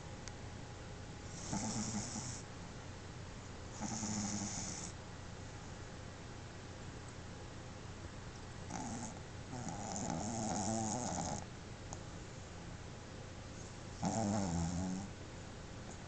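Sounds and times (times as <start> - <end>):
dog snoring: 1.3 - 2.5, 3.7 - 5.0, 8.7 - 11.5, 14.0 - 15.1.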